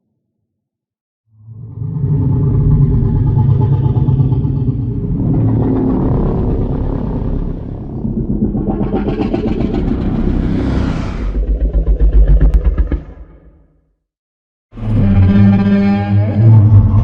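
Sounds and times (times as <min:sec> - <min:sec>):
monster growling: 0:01.9 - 0:13.2.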